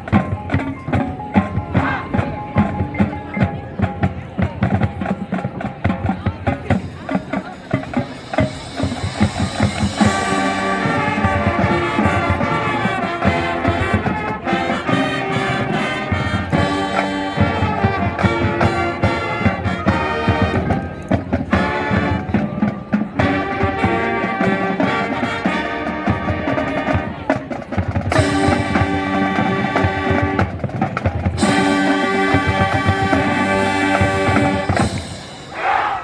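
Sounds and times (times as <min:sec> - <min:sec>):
marching drums: 0:00.0 - 0:36.0
brass holding chords: 0:08.8 - 0:27.2, 0:28.2 - 0:30.7, 0:31.4 - 0:35.0.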